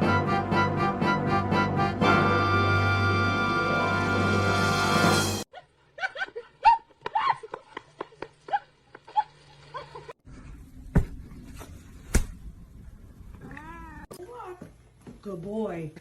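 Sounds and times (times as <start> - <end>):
music: 0.0 - 5.5.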